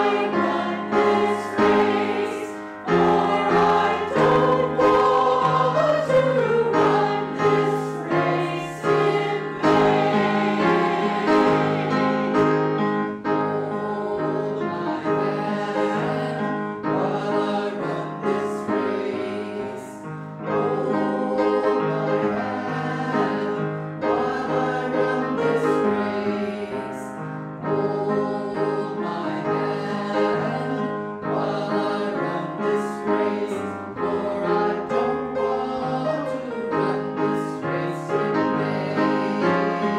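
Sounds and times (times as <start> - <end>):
choir singing a worship song: 0.0 - 39.9
piano accompaniment: 0.0 - 39.9.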